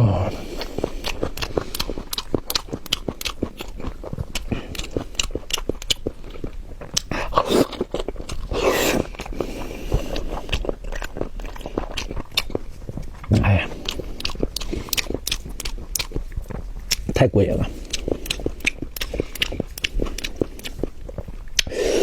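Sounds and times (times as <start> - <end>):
person chewing food: 0.0 - 22.0.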